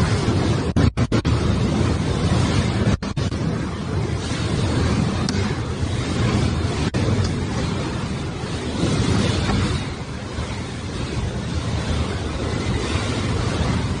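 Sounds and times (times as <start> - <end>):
strong wind buffeting microphone: 0.0 - 14.0.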